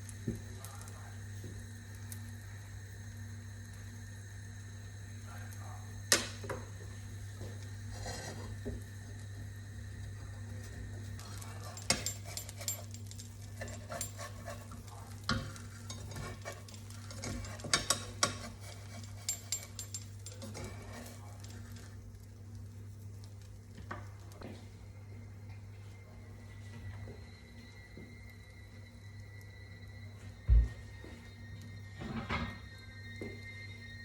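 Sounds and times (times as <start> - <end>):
food sizzling in a pan: 0.0 - 24.4
utensil tapping and scraping pan: 11.3 - 21.2.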